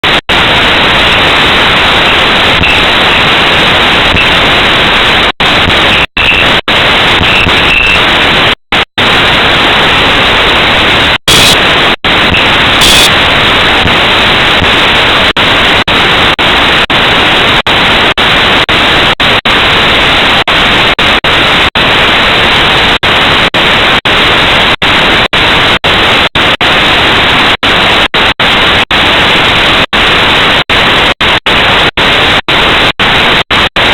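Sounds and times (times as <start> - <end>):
static hiss: 0.0 - 33.9
short loud blips: 5.8 - 8.1, 11.2 - 11.6, 12.3 - 13.2.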